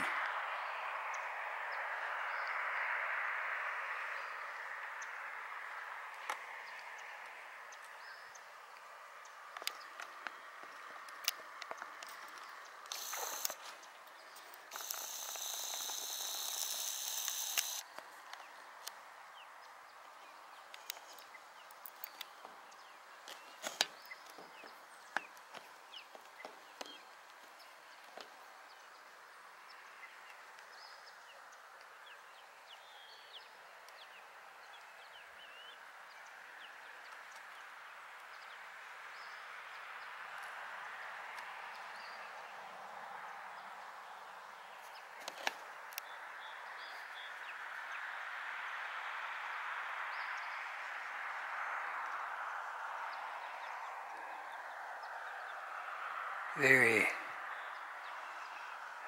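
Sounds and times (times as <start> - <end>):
sharp clicks: 11.1 - 13.6, 14.7 - 19.0
steady faint hiss: 12.3 - 34.8
bird chirps: 12.4 - 17.8
outdoor hiss: 12.9 - 13.9, 14.7 - 18.1
sharp click: 14.7 - 17.8.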